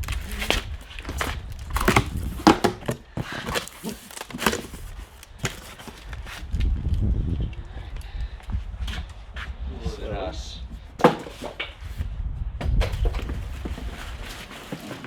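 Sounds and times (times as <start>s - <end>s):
hands rustling and crinkling: 0.0s - 12.1s, 12.9s - 15.0s
scuffing rumble: 0.0s - 15.0s.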